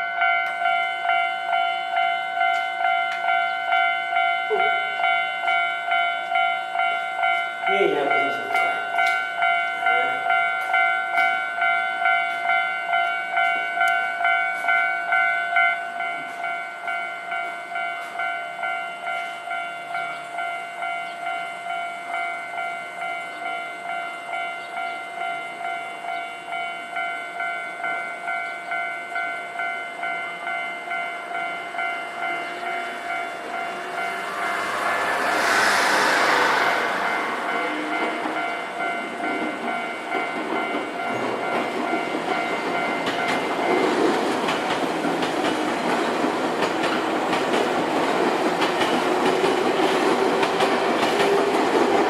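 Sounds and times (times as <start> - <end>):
level crossing warning bell: 0.0 - 35.5, 38.1 - 46.0
train rumble: 30.0 - 52.0.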